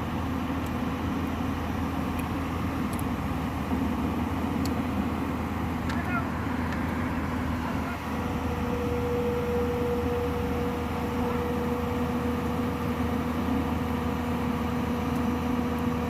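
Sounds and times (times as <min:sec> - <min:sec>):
heavy diesel machinery running: 0:00.0 - 0:16.0
steady whine: 0:00.0 - 0:16.0.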